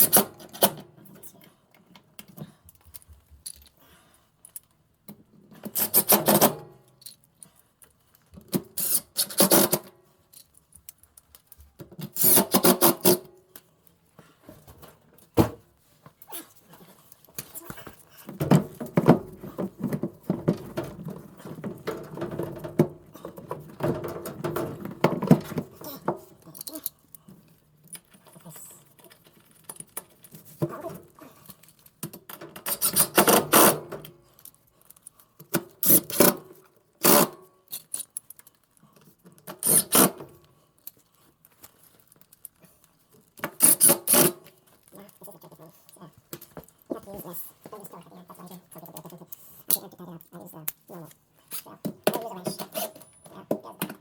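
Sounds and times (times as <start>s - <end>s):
tools and metal parts clicking: 2.2s - 3.8s, 5.6s - 13.2s, 20.7s - 27.2s, 27.8s - 42.6s, 43.2s - 45.2s, 50.6s - 54.0s.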